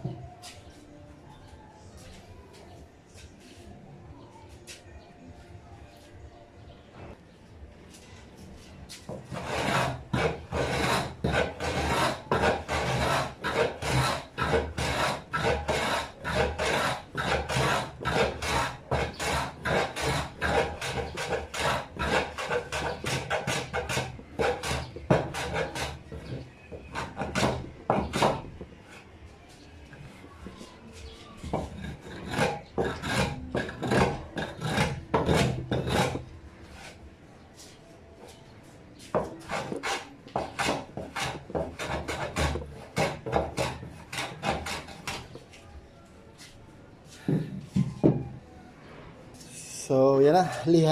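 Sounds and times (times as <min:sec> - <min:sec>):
hand tool scraping wood: 0:08.9 - 0:29.1, 0:29.9 - 0:37.0, 0:39.0 - 0:45.6.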